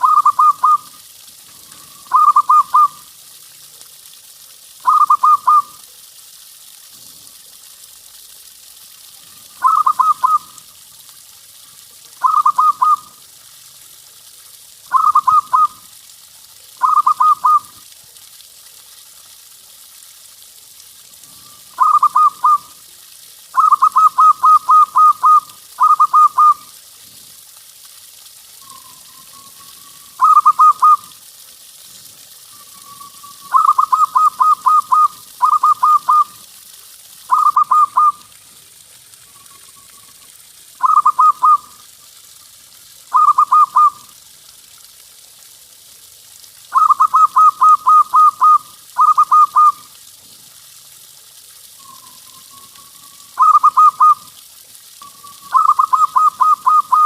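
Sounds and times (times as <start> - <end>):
dove cooing: 0.0 - 0.9, 1.7 - 3.0, 4.8 - 5.7, 9.6 - 10.4, 12.2 - 13.1, 14.9 - 15.7, 16.8 - 17.7, 21.8 - 22.6, 23.6 - 26.6, 30.1 - 31.1, 33.4 - 36.3, 40.8 - 41.7, 43.1 - 44.0, 46.8 - 49.8, 53.4 - 54.2, 55.4 - 57.0
faint steady hiss: 0.0 - 57.0.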